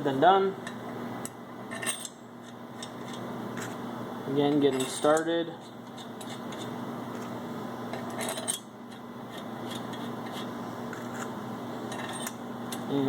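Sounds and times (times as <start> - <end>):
metal bolts clinking and scraping: 1.7 - 2.2, 4.6 - 5.3, 7.9 - 8.7, 11.9 - 12.4.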